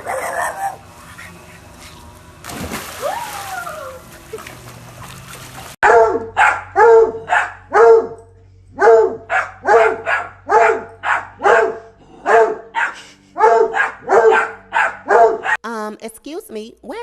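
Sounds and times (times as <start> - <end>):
dog barking: 0.0 - 0.8, 5.8 - 8.2, 8.8 - 15.6.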